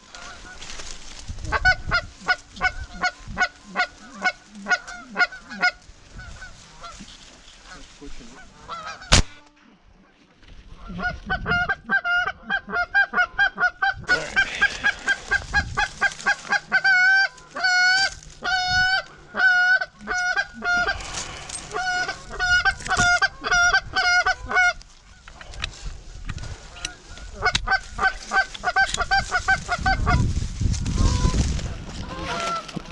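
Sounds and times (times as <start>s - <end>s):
goose honking: 0.1s - 0.8s, 1.4s - 7.0s, 7.6s - 9.2s, 10.8s - 25.3s, 32.0s - 32.9s.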